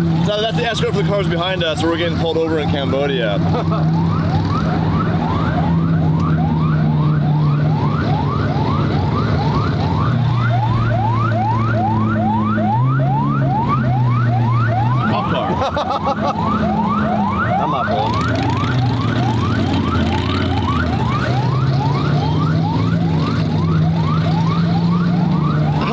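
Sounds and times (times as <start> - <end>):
siren yelping: 0.0 - 25.9
second siren: 3.4 - 25.9.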